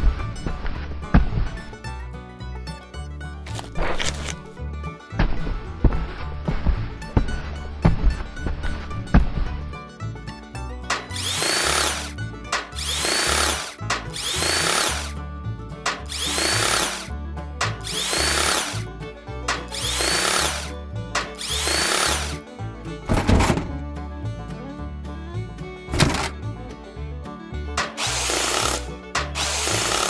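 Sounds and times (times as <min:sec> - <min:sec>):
power tool strokes: 0:03.5 - 0:04.5, 0:10.9 - 0:15.2, 0:15.9 - 0:17.1, 0:17.7 - 0:18.9, 0:19.5 - 0:22.4, 0:25.9 - 0:26.4, 0:27.8 - 0:30.0.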